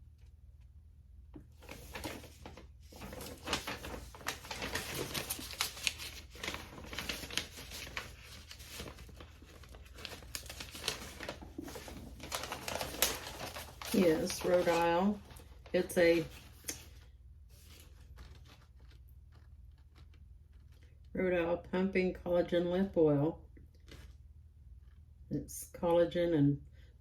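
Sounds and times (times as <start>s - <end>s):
paper and packaging crinkling: 1.5s - 21.2s, 23.8s - 25.0s.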